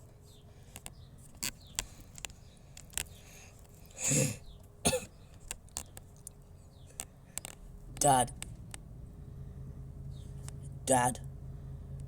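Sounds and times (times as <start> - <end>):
person clearing throat: 4.0 - 5.1.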